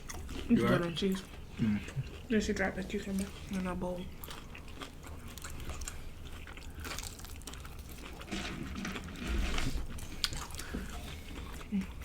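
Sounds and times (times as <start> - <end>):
crunchy biting and chewing: 4.1 - 12.0.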